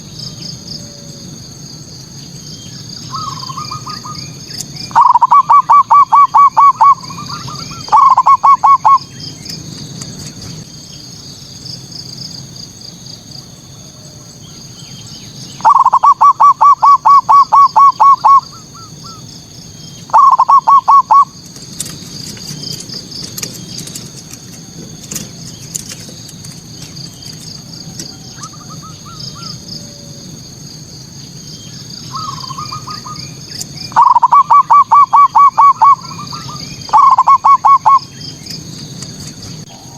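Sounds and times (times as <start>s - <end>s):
dove cooing: 4.9s - 9.2s, 15.6s - 19.2s, 20.1s - 21.4s, 32.2s - 33.3s, 33.9s - 38.1s
high-pitched chirping: 4.9s - 9.2s, 15.6s - 18.9s, 20.0s - 21.4s, 33.9s - 38.1s.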